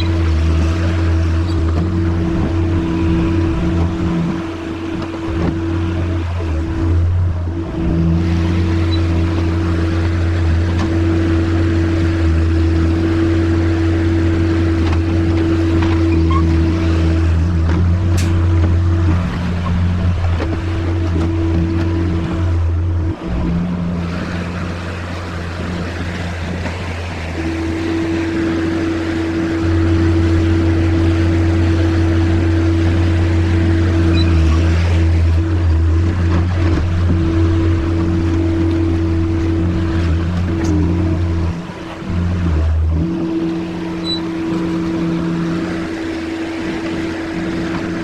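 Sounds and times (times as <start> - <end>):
loader engine running: 0.0 - 48.0
steady whine: 0.0 - 48.0.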